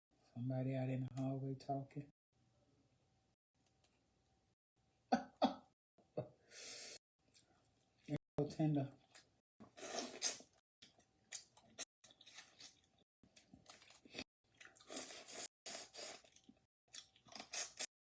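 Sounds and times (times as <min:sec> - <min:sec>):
person chewing wetly: 0:09.0 - 0:17.9.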